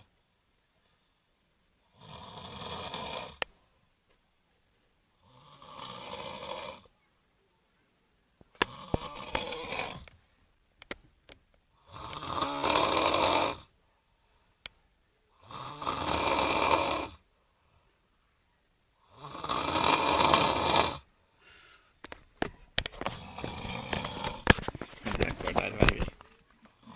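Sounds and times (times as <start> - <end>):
faint breaths: 0.0 - 2.0, 3.2 - 5.4, 13.6 - 15.7, 20.1 - 26.9
man snoring: 1.9 - 3.4, 5.3 - 6.8, 8.6 - 10.1, 11.9 - 13.6, 15.4 - 17.2, 19.1 - 21.0, 23.2 - 26.2.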